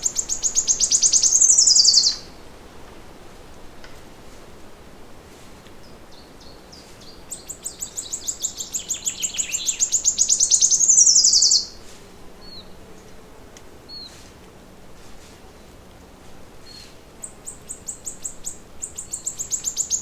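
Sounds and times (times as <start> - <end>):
faint bird chirps: 0.0 - 2.3, 6.1 - 11.8, 16.6 - 20.0
songbird trilling: 0.0 - 2.3, 6.1 - 11.8, 16.7 - 20.0.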